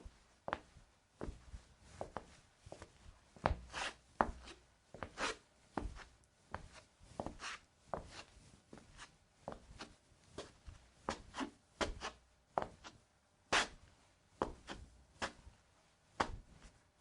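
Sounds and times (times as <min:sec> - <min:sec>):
footsteps on concrete: 0:00.5 - 0:01.4, 0:02.0 - 0:09.6.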